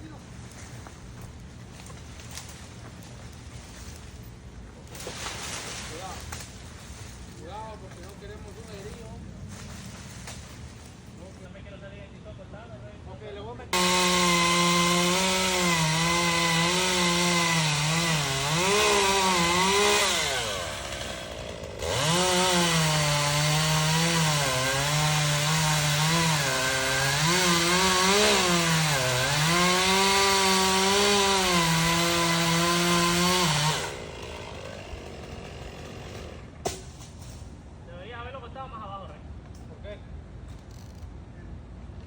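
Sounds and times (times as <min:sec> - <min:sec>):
chainsaw cutting wood: 0:13.8 - 0:37.0.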